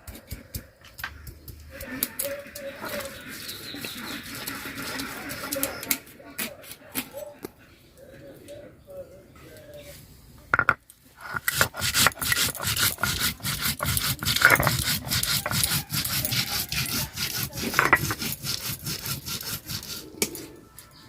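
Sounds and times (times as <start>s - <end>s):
stone roller scraping on grinding stone: 1.7s - 6.1s, 10.6s - 20.5s.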